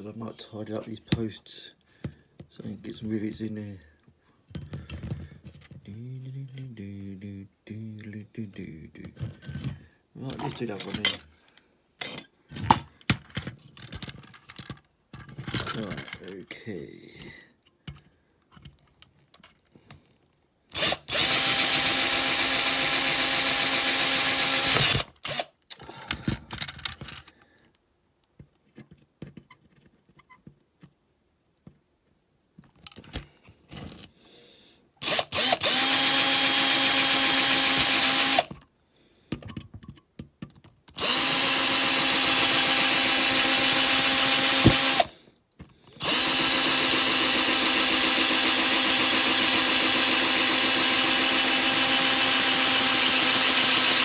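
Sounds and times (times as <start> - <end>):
small electric drill running: 20.8 - 25.5, 35.0 - 38.5, 41.0 - 45.2, 46.0 - 54.0.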